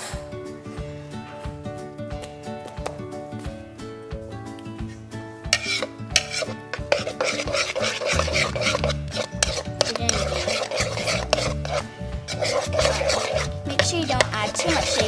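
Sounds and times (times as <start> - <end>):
background music: 0.0 - 15.0
spoon wet scraping: 5.5 - 15.0.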